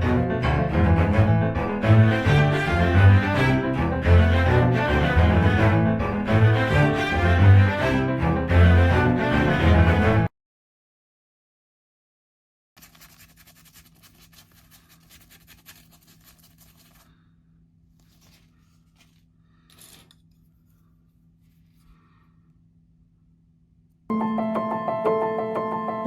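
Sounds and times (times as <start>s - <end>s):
scratching on plastic parts: 12.8s - 17.2s, 18.0s - 21.9s.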